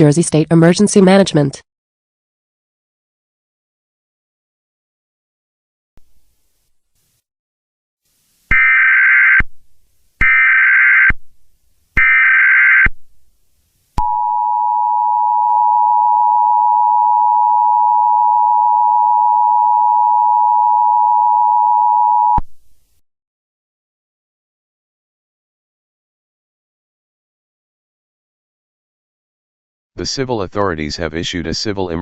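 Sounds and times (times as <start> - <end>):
two-tone alarm: 8.5 - 9.4, 10.2 - 11.2, 12.0 - 12.9, 14.0 - 22.4
data burst tones: 8.5 - 9.5, 10.2 - 11.2, 12.0 - 12.9.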